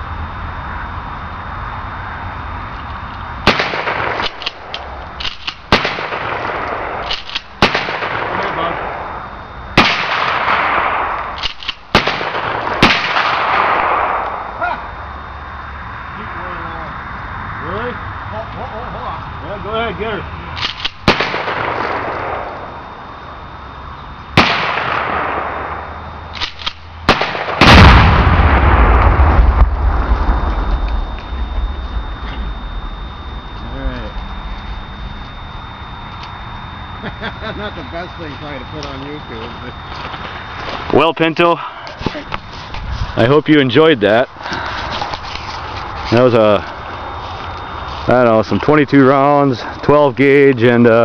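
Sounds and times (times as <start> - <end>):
steady background noise: 0.0 - 51.0
gunshots: 3.4 - 9.2, 9.8 - 14.7, 20.6 - 22.7, 24.4 - 29.8
rifle shots echoing: 3.4 - 9.2, 9.8 - 14.5, 20.6 - 22.8, 24.4 - 29.6
huge explosive blast with rumble: 27.1 - 35.0.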